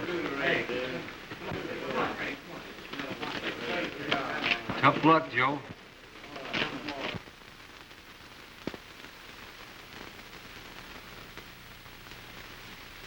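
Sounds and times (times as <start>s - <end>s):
film soundtrack hiss and crackle: 0.0s - 13.0s.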